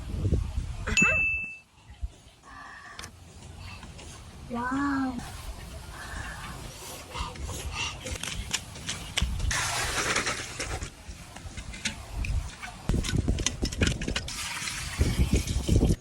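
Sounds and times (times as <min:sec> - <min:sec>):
sharp clicks and knocks from handling: 0:08.1 - 0:09.5, 0:10.2 - 0:14.3.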